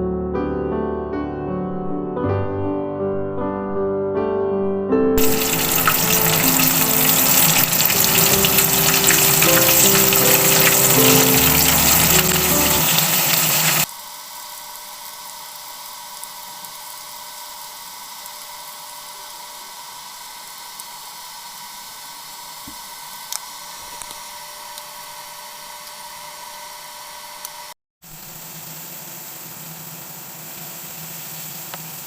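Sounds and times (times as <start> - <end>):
loud sound cutting off: 5.2 - 13.9
steady whine with hiss: 28.1 - 32.0.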